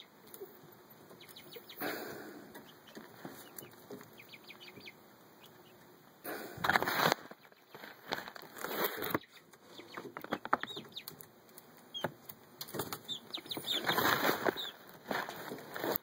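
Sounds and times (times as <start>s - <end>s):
scrabbling on a perch: 6.3s - 11.2s, 12.6s - 16.0s
hens flapping wings: 12.7s - 16.0s.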